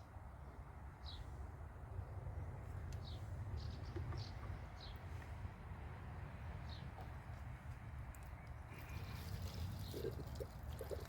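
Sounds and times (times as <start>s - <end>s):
bird chirp: 3.0s - 5.2s.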